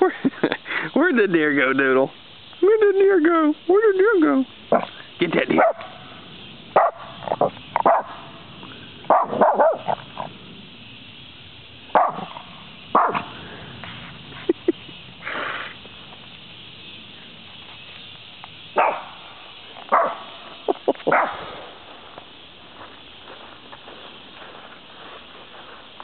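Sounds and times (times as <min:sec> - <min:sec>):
small dog barking: 0:04.7 - 0:04.9, 0:05.6 - 0:06.0, 0:06.8 - 0:08.3, 0:09.1 - 0:10.0, 0:11.9 - 0:13.3, 0:18.8 - 0:19.2, 0:19.9 - 0:20.4, 0:21.1 - 0:21.4.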